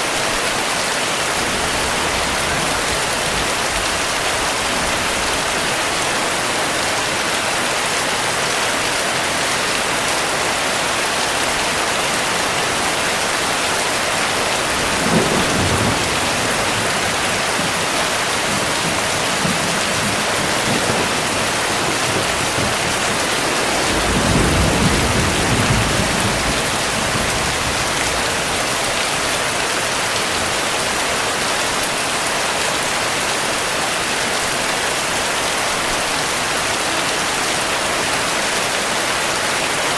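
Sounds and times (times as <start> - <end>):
heavy rain falling: 0.0 - 39.9
thunder rumbling: 14.6 - 28.7.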